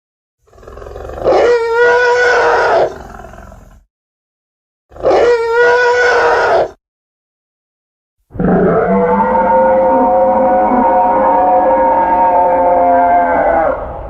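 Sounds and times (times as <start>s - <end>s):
dinosaur calls: 1.1s - 3.0s, 5.0s - 6.8s, 8.3s - 14.0s.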